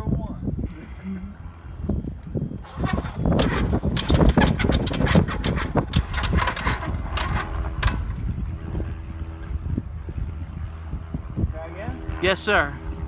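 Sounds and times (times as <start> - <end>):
aircraft engine starting rough: 2.4 - 11.3.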